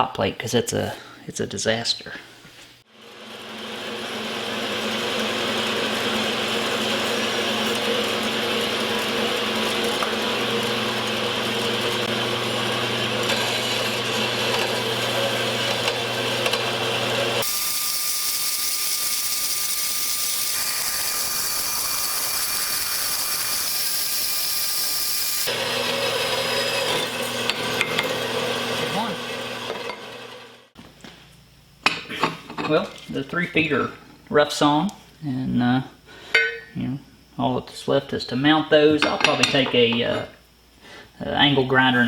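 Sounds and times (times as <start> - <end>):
metal-working power tools humming: 2.9 - 30.8.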